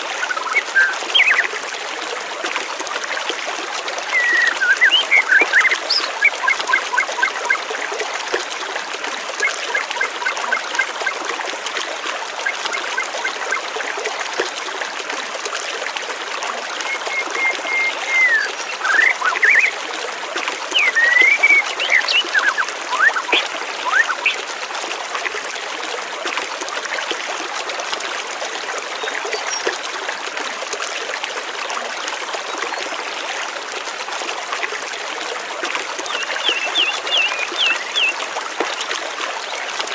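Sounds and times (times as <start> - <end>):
water trickling: 0.0 - 39.9
birds chirping: 4.2 - 7.3, 16.9 - 19.7, 20.7 - 24.4, 36.1 - 38.2.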